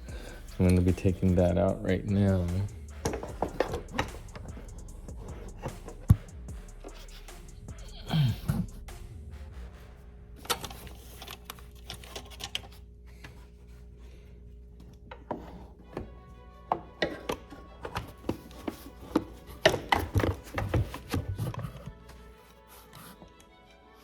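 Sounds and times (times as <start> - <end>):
faint background music: 0.0 - 24.0
hand tools clicking and knocking: 0.6 - 7.0, 16.7 - 22.1.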